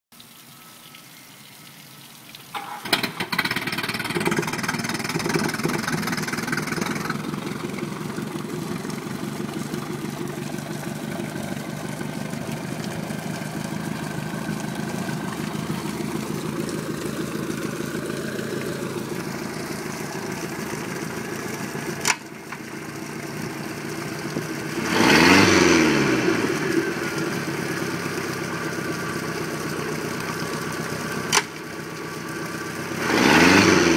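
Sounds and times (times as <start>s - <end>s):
engine revving: 2.6s - 11.3s, 24.5s - 28.2s, 32.8s - 33.9s
boat engine idling: 2.6s - 33.9s.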